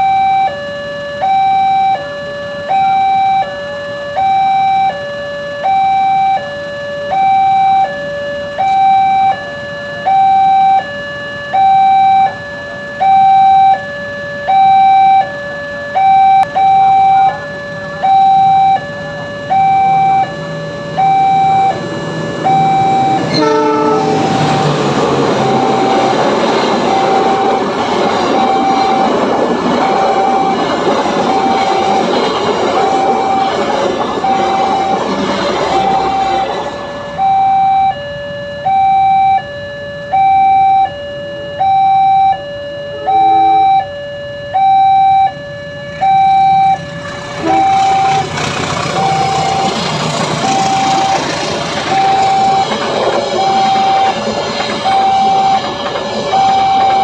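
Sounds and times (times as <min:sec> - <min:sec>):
two-tone crossing alarm: 0:00.0 - 0:57.0
train rushing rumble: 0:19.1 - 0:37.4, 0:46.7 - 0:57.0.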